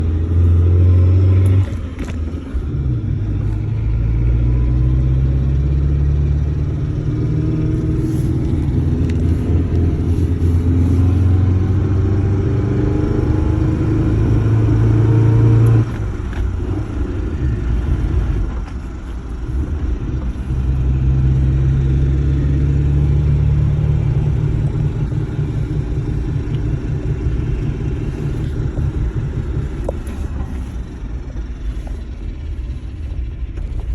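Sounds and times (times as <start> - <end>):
car drivetrain droning: 0.0 - 33.9.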